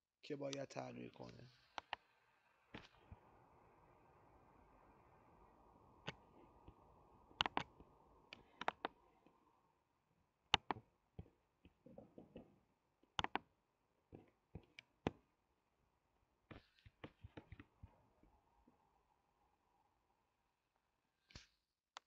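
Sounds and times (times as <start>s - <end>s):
keyboard and mouse clicks: 1.7s - 2.0s, 6.0s - 9.0s, 10.5s - 12.5s, 13.1s - 13.5s, 16.5s - 18.0s.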